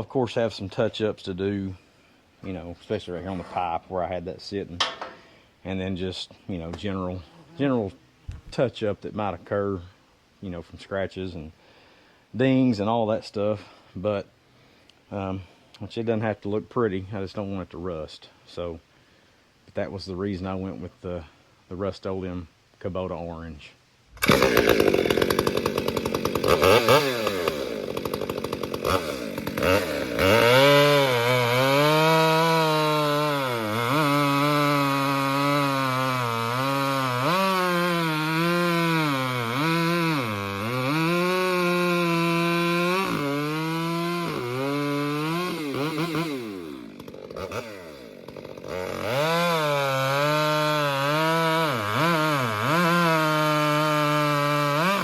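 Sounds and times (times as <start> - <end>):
chainsaw cutting logs: 24.1 - 55.0.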